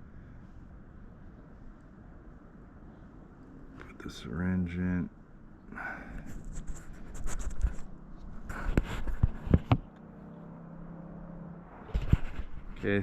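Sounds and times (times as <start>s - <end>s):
faint steady hum: 0.0s - 13.0s
scratchy rubbing: 6.2s - 9.8s.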